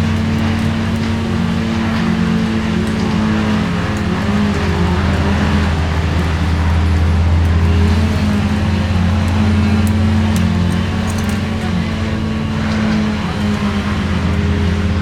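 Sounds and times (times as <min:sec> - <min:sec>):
large engine humming: 0:00.0 - 0:15.0.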